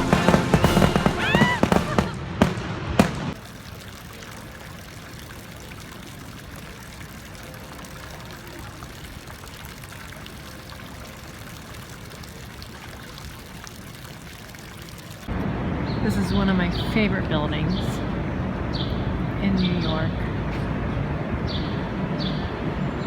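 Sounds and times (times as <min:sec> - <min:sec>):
firework bangs: 0:00.0 - 0:03.4.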